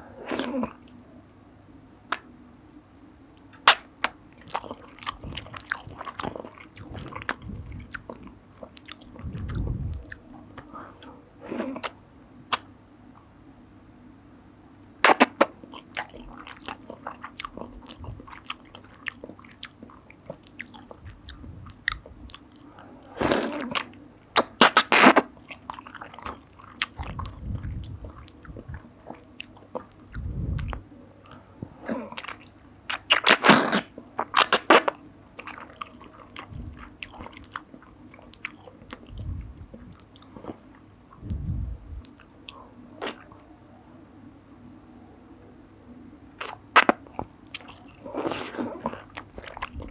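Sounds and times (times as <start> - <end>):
wet chewing: 3.6 - 12.7, 15.0 - 43.4, 46.4 - 49.9
loud noodle slurps: 23.1 - 25.3, 33.1 - 34.9, 48.1 - 49.9.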